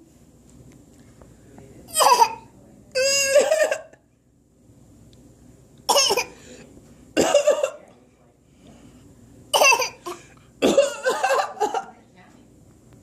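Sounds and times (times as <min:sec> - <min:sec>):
boy coughing: 0:01.9 - 0:02.4, 0:03.0 - 0:04.0, 0:05.9 - 0:06.4, 0:07.2 - 0:07.8, 0:09.5 - 0:11.9.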